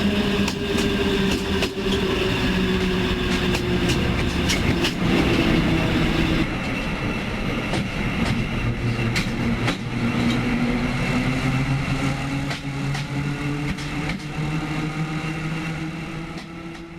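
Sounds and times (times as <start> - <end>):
train rumbling on rails: 0.0 - 16.9
wheels clicking over track: 0.3 - 6.4.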